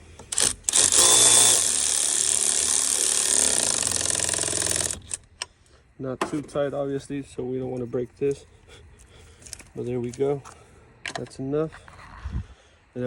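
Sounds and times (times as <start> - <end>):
power tool running: 0.2 - 5.2.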